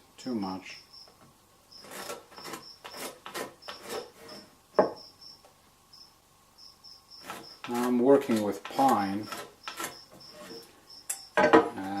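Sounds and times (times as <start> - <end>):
chisel scraping and knocking wood: 1.1 - 5.1, 7.1 - 12.0.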